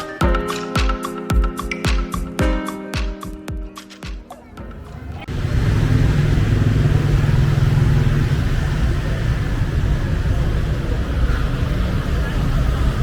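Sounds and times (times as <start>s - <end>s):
traffic rumble: 4.3s - 13.0s.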